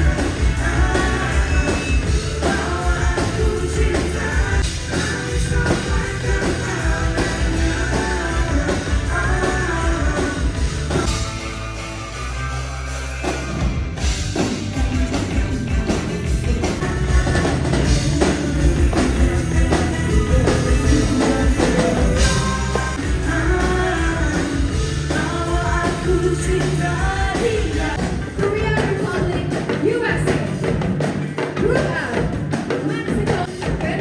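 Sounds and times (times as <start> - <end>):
lead vocal singing: 0.0 - 11.2, 15.7 - 30.8
rock band playing live: 0.0 - 34.0.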